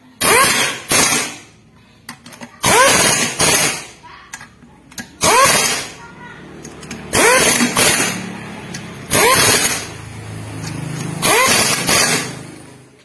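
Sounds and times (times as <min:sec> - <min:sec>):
power tool whining bursts: 0:11.2 - 0:12.4.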